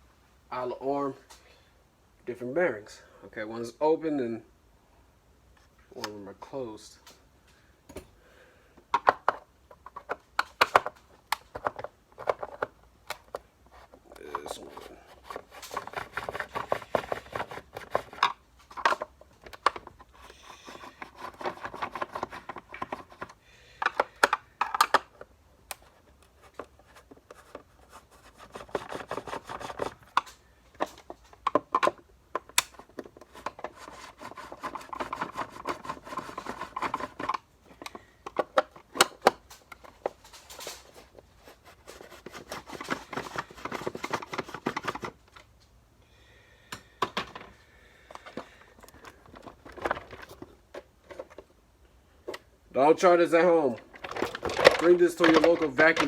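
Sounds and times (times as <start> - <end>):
scraping and rubbing of parts: 9.2 - 45.5, 47.0 - 51.6, 53.3 - 56.0.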